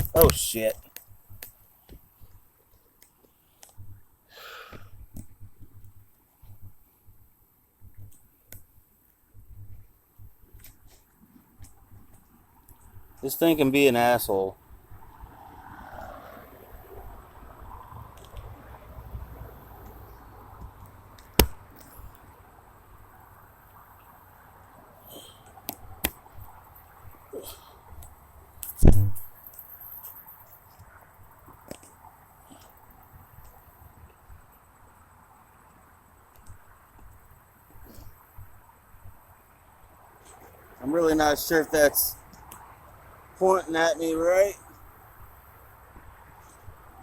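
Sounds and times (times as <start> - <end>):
faint background noise: 0.0 - 47.0
short breathy hiss: 4.3 - 5.0.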